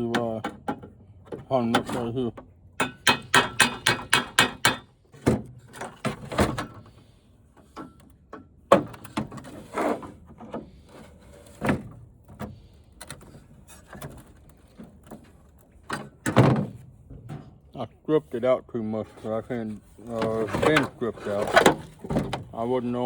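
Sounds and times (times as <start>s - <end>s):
tools knocking on plastic and metal: 2.8s - 5.4s.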